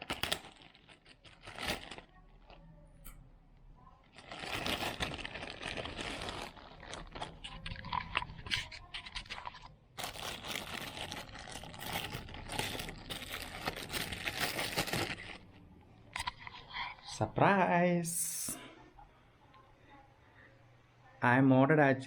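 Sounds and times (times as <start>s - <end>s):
packaging crinkling and tearing: 0.0s - 2.6s, 4.1s - 15.6s.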